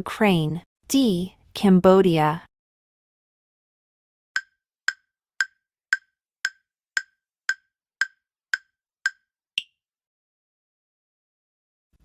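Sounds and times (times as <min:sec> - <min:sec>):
countdown timer ticking: 0:04.4 - 0:09.7.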